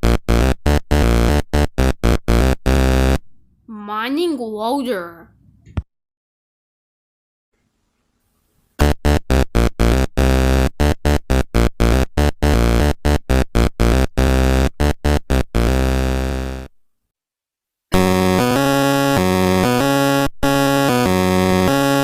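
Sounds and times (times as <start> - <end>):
synthesizer music with choppy beat: 0.0 - 3.2, 8.8 - 16.6, 18.0 - 22.0.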